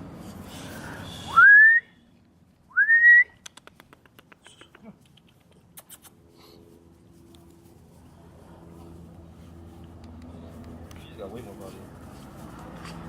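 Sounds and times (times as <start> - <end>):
person whistling rising notes: 1.3 - 2.0, 2.7 - 3.4
faint quick ticks: 3.4 - 6.1.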